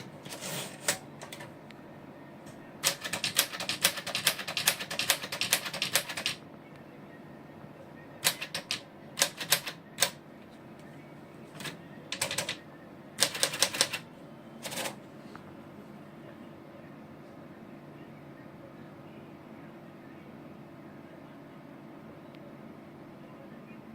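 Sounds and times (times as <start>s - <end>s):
typewriter keys clacking: 2.8s - 6.4s, 8.2s - 10.2s, 11.6s - 12.6s, 13.2s - 14.0s.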